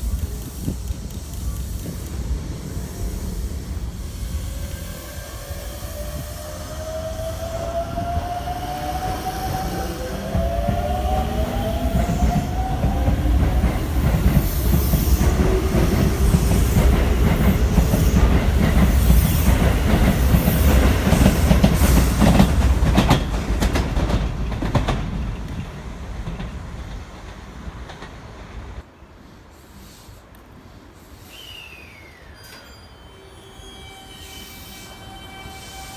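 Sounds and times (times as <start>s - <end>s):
train wheels clacking over rail joints: 9.5s - 28.5s.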